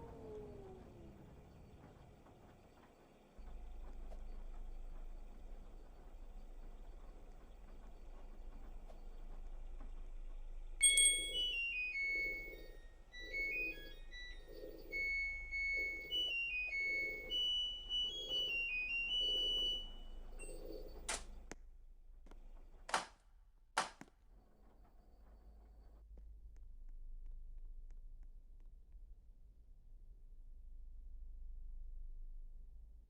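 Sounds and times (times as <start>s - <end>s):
washing machine beeper melody: 10.8s - 21.4s
sharp clicks: 20.4s - 21.6s, 22.9s - 23.2s.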